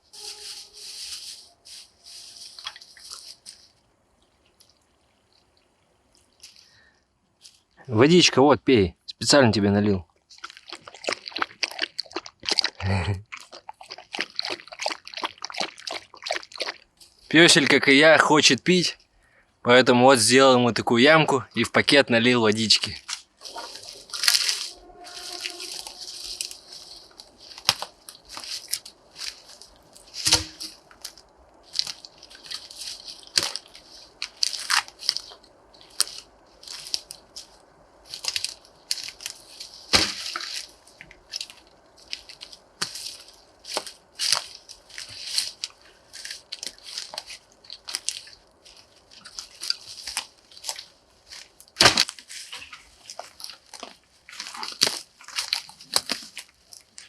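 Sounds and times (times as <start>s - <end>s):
dog lapping water: 10.3s - 16.9s
plastic bag crinkling: 23.1s - 37.4s.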